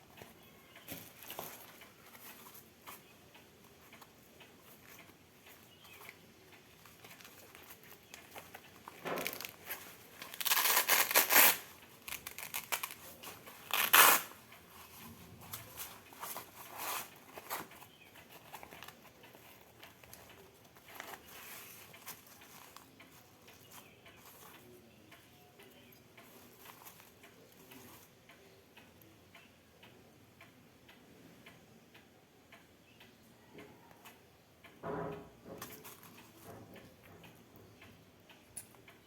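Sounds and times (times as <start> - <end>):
packaging tearing and crinkling: 9.0 - 13.0.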